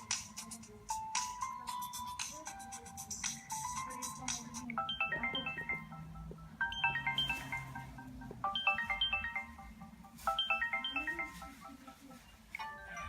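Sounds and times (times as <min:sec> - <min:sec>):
phone ringtone: 0:00.0 - 0:13.0.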